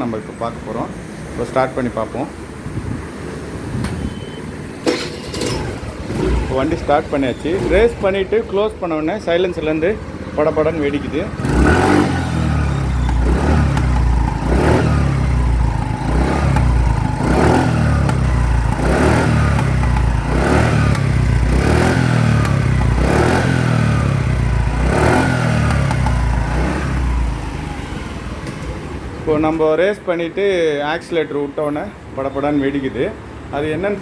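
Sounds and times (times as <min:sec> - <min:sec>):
scooter engine revving: 0:04.8 - 0:08.5, 0:10.0 - 0:29.1
exhaust backfire pops: 0:12.7 - 0:23.4, 0:25.6 - 0:26.8.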